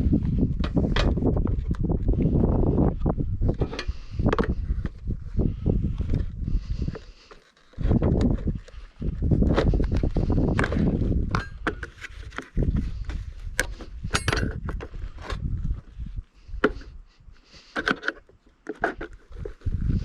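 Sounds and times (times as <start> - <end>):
tools knocking on metal lock: 14.1 - 14.6.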